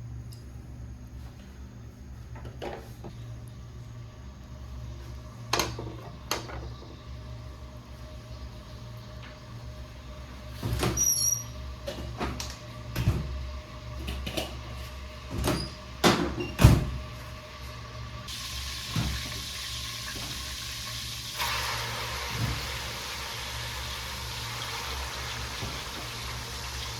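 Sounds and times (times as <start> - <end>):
food sizzling in hot oil: 17.0 - 26.9.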